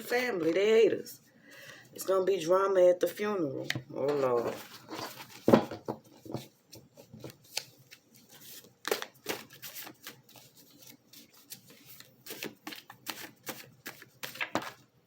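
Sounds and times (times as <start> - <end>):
cards being shuffled: 3.6 - 14.8.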